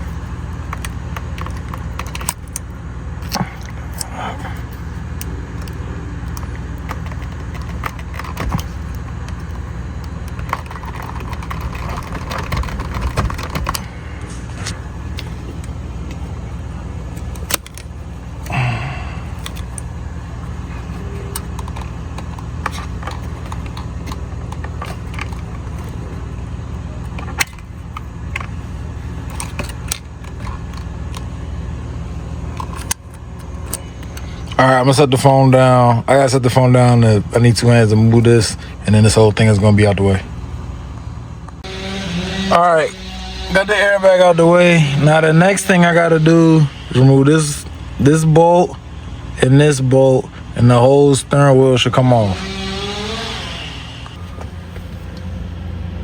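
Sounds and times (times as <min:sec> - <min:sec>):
clicks and rattles of car parts: 0:00.0 - 0:31.4, 0:32.4 - 0:35.8
steady low hum: 0:00.0 - 0:56.0.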